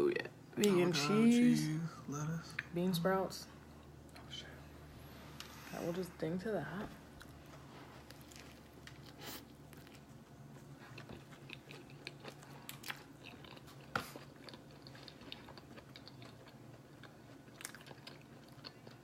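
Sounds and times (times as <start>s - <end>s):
person chewing crunchy sandwich: 7.2s - 19.0s.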